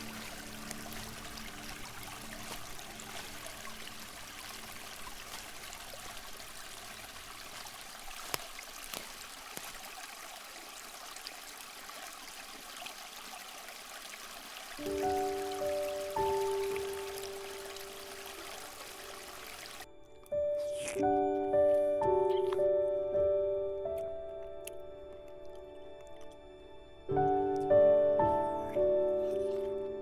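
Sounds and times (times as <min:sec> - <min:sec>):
faint music notes: 0:00.0 - 0:05.6, 0:14.8 - 0:30.0
small water splashes: 0:00.0 - 0:19.9
stream water flowing: 0:00.0 - 0:24.2.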